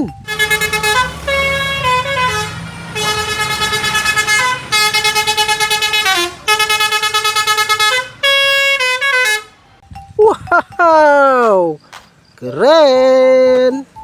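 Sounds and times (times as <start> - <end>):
musical bus horn: 0.2 - 9.7.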